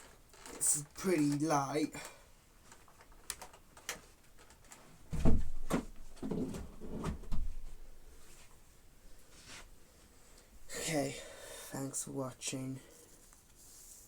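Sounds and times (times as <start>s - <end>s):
heavy thump: 5.1s - 6.4s.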